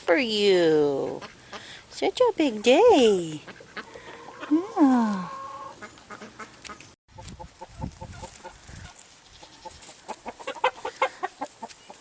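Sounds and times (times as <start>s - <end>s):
chickens clucking: 3.3s - 12.0s.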